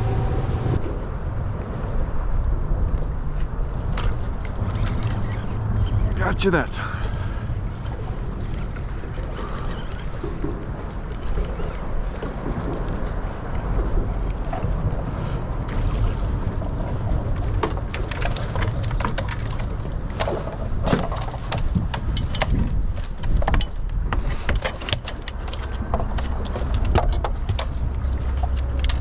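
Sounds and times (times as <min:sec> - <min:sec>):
wind rumbling on microphone: 0:00.0 - 0:29.0
sharp clicks and knocks: 0:17.4 - 0:29.0.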